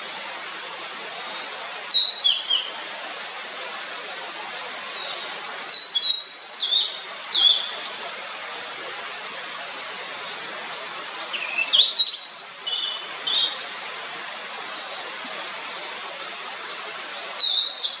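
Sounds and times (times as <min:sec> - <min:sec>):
steady background hiss: 0:00.0 - 0:18.0
bird singing whistled notes: 0:01.8 - 0:02.7, 0:04.6 - 0:07.9, 0:11.3 - 0:14.2, 0:17.4 - 0:18.0.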